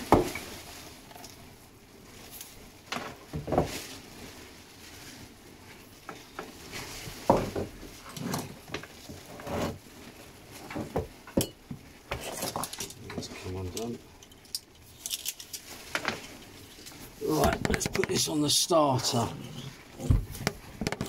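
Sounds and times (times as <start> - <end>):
objects clunking being set down: 2.9 - 3.9, 7.1 - 9.8.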